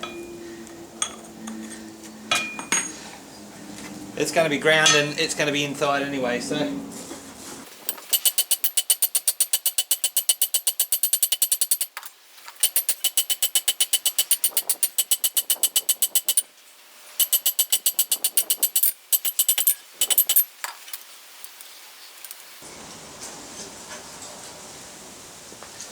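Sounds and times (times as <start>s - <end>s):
hammer striking hot steel on anvil: 0.0s - 0.3s, 2.3s - 2.9s, 7.9s - 11.9s, 12.6s - 16.4s, 17.2s - 20.4s.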